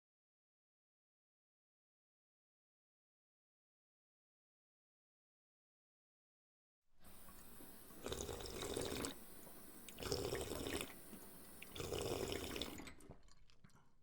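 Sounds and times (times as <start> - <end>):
water dripping: 7.1 - 14.0
water trickling: 7.1 - 14.0.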